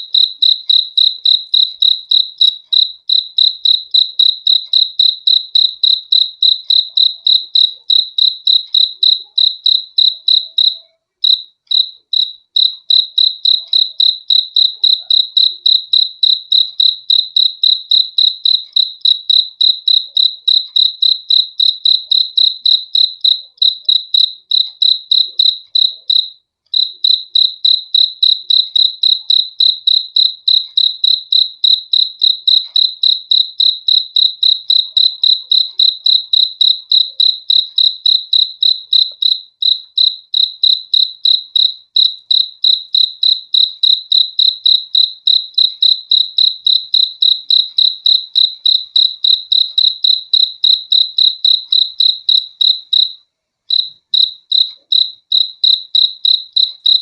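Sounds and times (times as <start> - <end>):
cricket chirping: 0.0 - 57.0.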